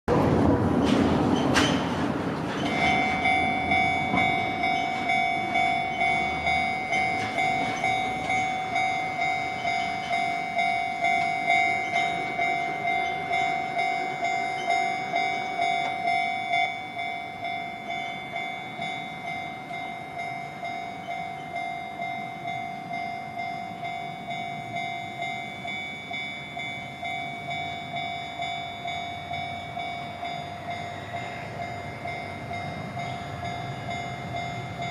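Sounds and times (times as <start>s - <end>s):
rush of noise and clatter: 0.1s - 3.1s
level crossing bell dinging: 2.7s - 34.9s.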